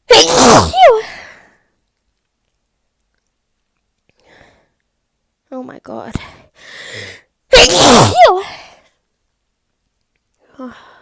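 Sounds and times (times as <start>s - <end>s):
loud sneeze: 0.1s - 1.1s, 7.5s - 8.5s.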